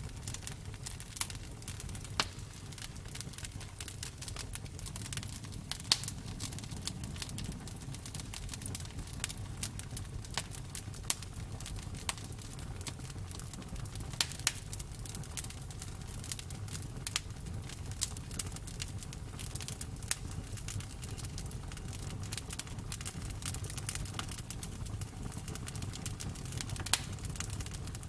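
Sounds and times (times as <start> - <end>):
low steady rumble: 0.0 - 14.0
campfire crackling: 0.0 - 28.0.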